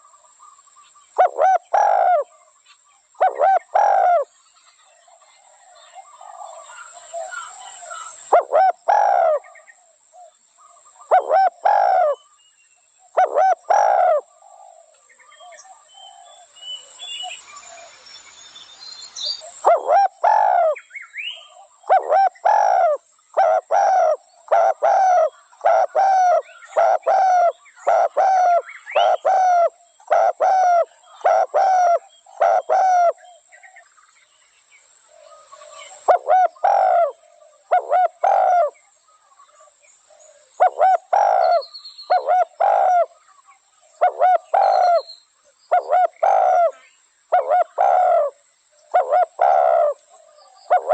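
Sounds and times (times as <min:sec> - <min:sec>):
dove cooing: 0:01.2 - 0:02.4, 0:03.2 - 0:04.3, 0:05.4 - 0:09.6, 0:11.0 - 0:12.2, 0:13.1 - 0:16.4, 0:19.4 - 0:20.8, 0:21.5 - 0:33.4, 0:35.2 - 0:38.8, 0:40.1 - 0:43.2, 0:44.0 - 0:45.1, 0:45.7 - 0:50.9.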